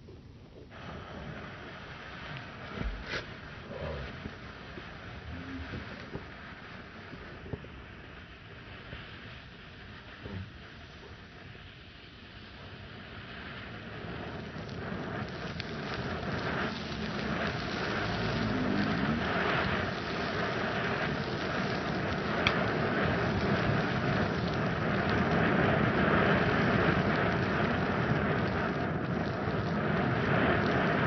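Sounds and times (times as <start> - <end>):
firework crackles: 0.0 - 31.0
firework fountain hissing: 0.0 - 31.0
sharp pop: 2.8 - 3.3.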